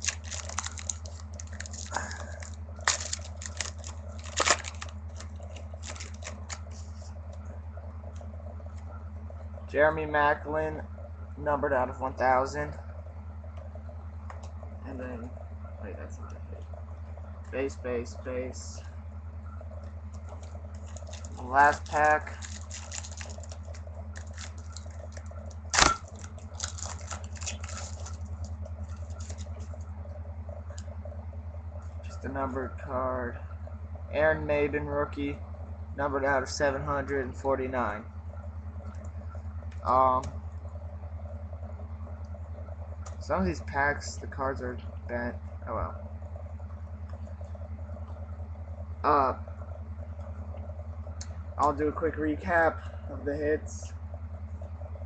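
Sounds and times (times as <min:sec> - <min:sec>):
wrapper crinkling and tearing: 0:00.0 - 0:06.8, 0:20.3 - 0:29.8
cards rustling and sliding: 0:00.0 - 0:07.0
steady low hum: 0:00.0 - 0:55.0.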